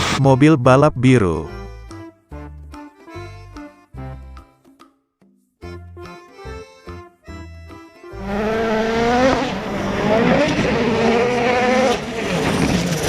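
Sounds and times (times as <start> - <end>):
race car engine revving: 8.2 - 13.0.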